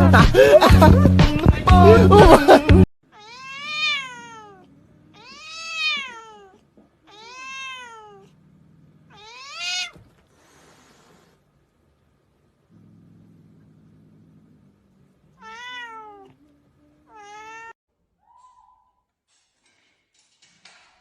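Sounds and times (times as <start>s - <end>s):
music: 0.0s - 2.8s
cat meowing: 3.1s - 8.4s, 9.1s - 10.2s, 15.4s - 17.8s.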